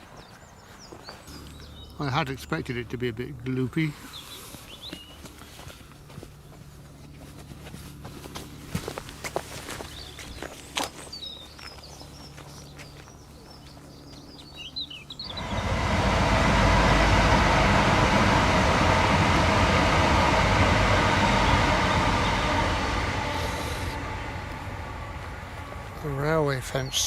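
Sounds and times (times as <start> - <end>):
birds chirping quietly: 0.0 - 7.1, 9.8 - 15.4
train passing close by: 15.1 - 27.0.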